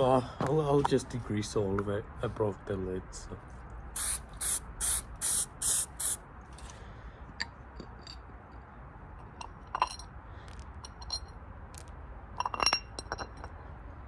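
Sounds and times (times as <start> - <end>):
spray hissing bursts: 4.0 - 6.2
clicks and clinks of parts: 9.2 - 13.6.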